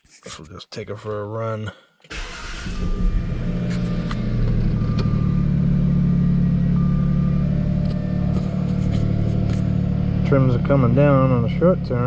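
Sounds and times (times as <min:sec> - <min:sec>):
car engine running: 0:02.6 - 0:12.0.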